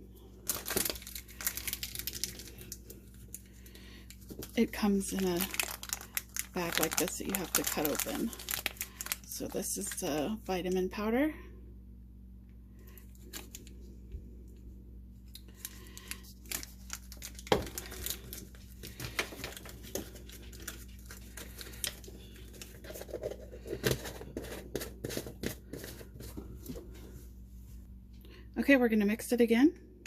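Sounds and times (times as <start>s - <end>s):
plastic bag crinkling: 0.4s - 10.6s, 15.4s - 26.1s.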